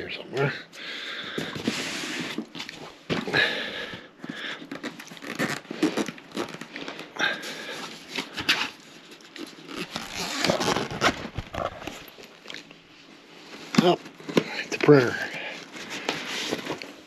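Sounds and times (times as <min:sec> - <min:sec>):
paper and plastic rustling: 0:04.2 - 0:17.0
items knocking and scraping: 0:13.6 - 0:17.0.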